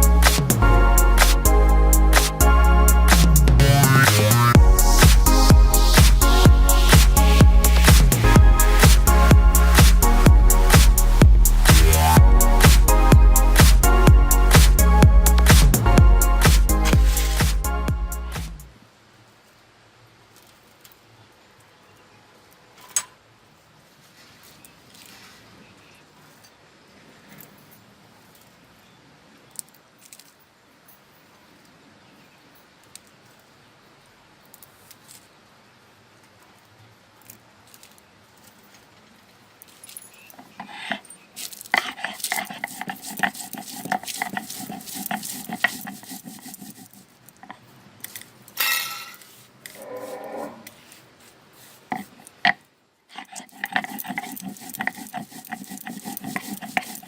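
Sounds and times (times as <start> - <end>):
stone roller scraping grinding stone: 14.6 - 17.6, 40.2 - 47.6, 51.8 - 57.0.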